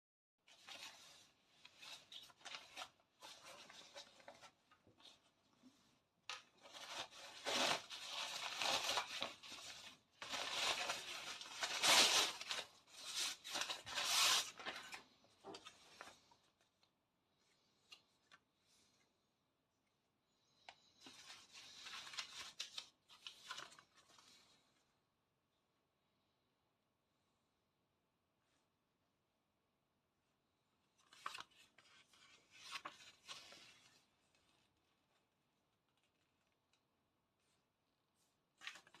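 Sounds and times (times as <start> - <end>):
crinkly material rustling: 0.4 - 19.0, 20.4 - 24.8, 30.8 - 39.0.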